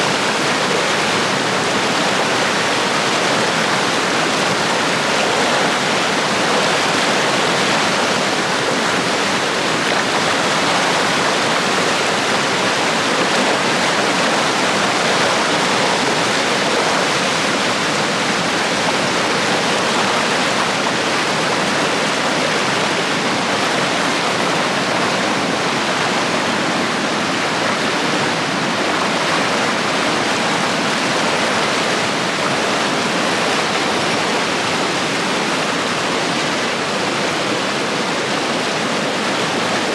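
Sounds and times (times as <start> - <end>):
stream rushing over rocks: 0.0 - 39.9.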